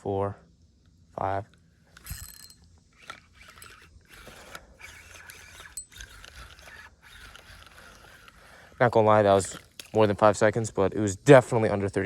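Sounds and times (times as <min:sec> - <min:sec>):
fishing reel whirring: 0:02.0 - 0:09.9
reel clicks: 0:02.0 - 0:10.1.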